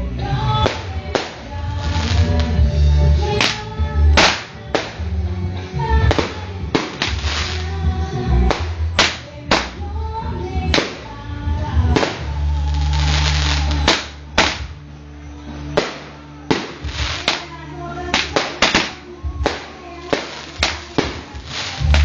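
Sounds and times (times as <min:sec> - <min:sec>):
music: 0:00.0 - 0:22.0
fireworks bangs: 0:00.6 - 0:02.6, 0:04.2 - 0:05.0, 0:06.1 - 0:07.7, 0:11.9 - 0:14.8, 0:15.8 - 0:17.5, 0:18.2 - 0:22.0
voices: 0:05.8 - 0:22.0.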